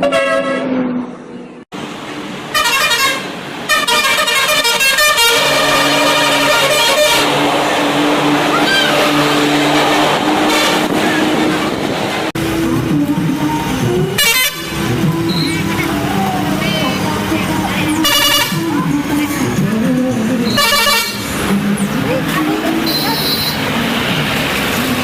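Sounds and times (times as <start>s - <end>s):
bus musical horns tooting: 0.0s - 0.9s, 2.5s - 11.8s, 13.6s - 19.6s, 20.4s - 23.8s.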